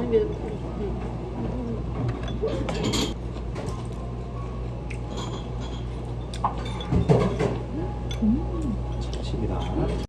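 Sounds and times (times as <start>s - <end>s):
tableware clinking: 2.0s - 4.1s, 4.9s - 10.0s.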